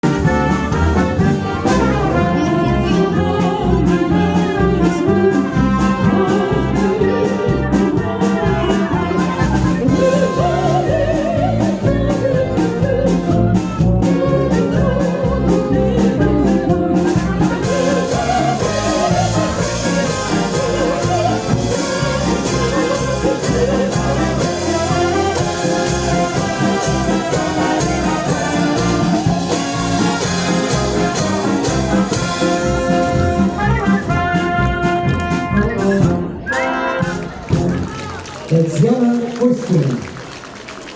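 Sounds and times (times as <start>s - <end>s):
instrumental band with steady beat: 0.0s - 39.3s
whistled melody: 35.4s - 37.4s.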